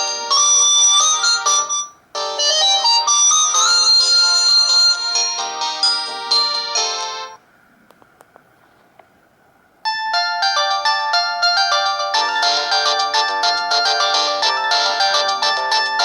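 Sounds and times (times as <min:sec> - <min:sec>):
polyphonic phone ringtone: 0:00.0 - 0:07.4, 0:09.9 - 0:16.0.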